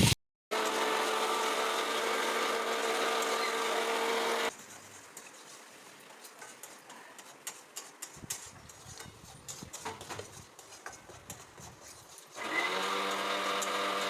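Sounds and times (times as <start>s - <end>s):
small electric motor humming: 0.6s - 4.5s, 12.4s - 14.0s.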